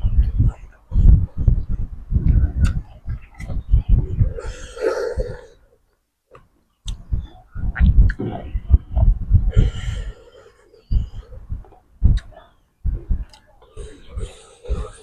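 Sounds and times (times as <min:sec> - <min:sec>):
breathy drawn-in sounds: 0:04.0 - 0:05.8, 0:09.4 - 0:15.0
chewing and mouth smacking: 0:13.3 - 0:13.6.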